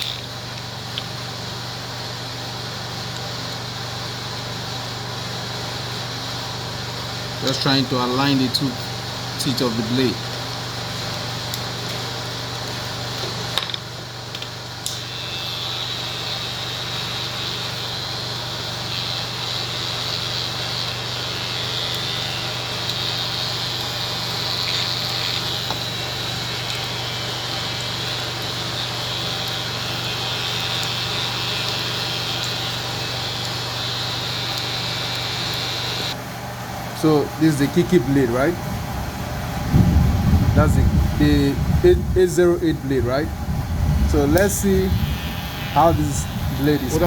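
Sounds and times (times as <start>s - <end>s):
electric hair clipper running: 0.0s - 1.1s, 11.0s - 36.2s, 44.1s - 47.0s.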